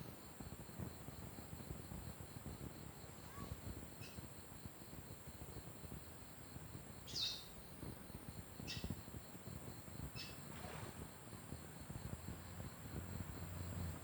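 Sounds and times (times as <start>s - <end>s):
insects buzzing: 0.1s - 14.0s
bird chirping: 7.1s - 7.5s, 10.2s - 10.4s.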